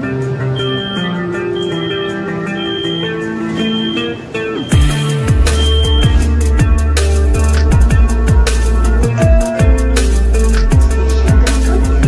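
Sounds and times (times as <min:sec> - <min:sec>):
electronic music: 0:00.0 - 0:12.0
heavy bass drop with drums: 0:04.7 - 0:12.0.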